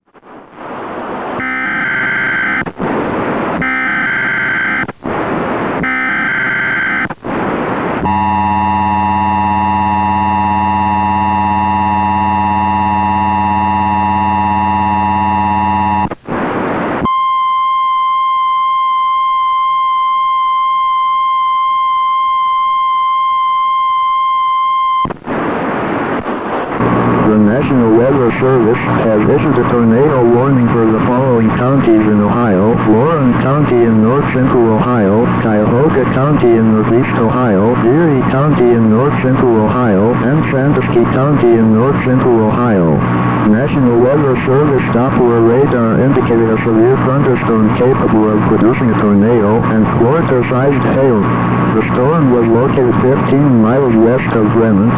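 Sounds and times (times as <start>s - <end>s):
static: 0.0s - 54.9s
digital header bursts: 1.4s - 2.7s, 3.6s - 4.9s, 5.8s - 7.2s, 8.0s - 16.2s
harsh two-tone attention signal: 1.4s - 2.7s, 3.6s - 4.9s, 5.8s - 7.1s, 8.0s - 16.1s, 17.0s - 25.1s
steady warning alarm tone: 1.4s - 2.7s, 3.6s - 4.9s, 5.8s - 7.2s, 8.0s - 16.1s.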